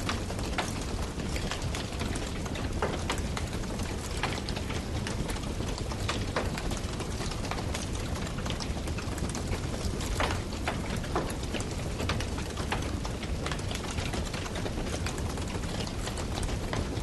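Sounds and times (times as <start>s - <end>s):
fire crackling and popping: 0.0s - 17.0s.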